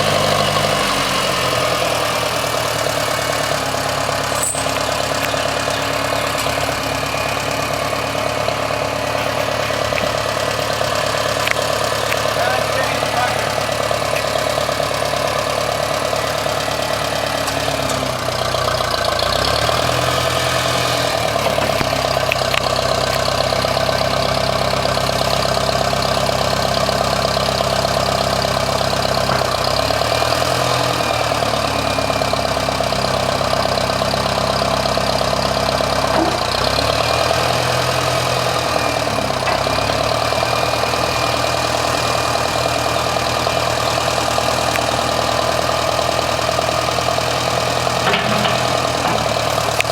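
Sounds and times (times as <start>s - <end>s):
engine running: 0.0s - 49.9s.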